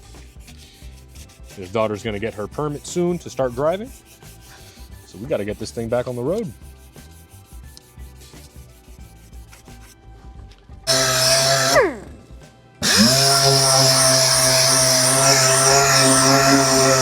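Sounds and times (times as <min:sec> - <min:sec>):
orbital sander sanding: 0:10.9 - 0:11.9, 0:12.8 - 0:17.0.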